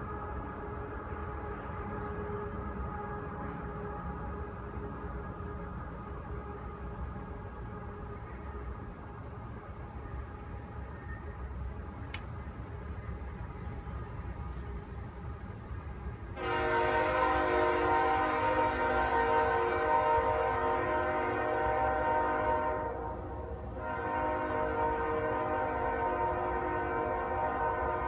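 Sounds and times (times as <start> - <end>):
locomotive air horn chord: 0.0 - 6.9, 16.4 - 28.0.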